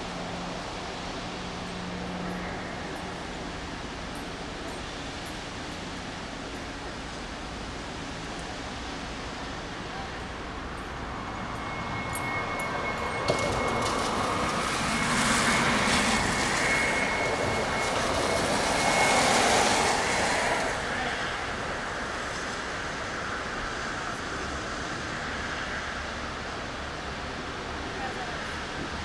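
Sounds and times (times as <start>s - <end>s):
city traffic: 0.0s - 29.0s
high-pitched ringing tone: 1.5s - 7.0s, 8.9s - 21.6s.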